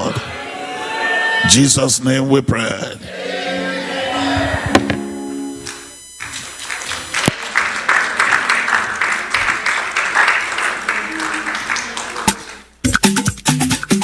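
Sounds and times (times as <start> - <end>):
church music chords: 2.8 - 12.8
congregation applauding: 5.6 - 12.8.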